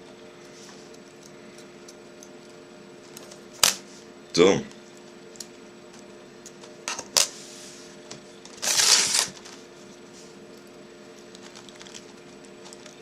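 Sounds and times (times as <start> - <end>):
faint steady hum: 0.0 - 13.0
rustling scrape: 7.3 - 8.0.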